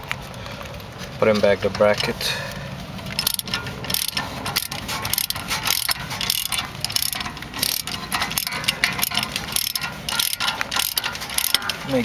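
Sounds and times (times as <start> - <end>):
socket ratchet clicking: 3.1 - 12.0.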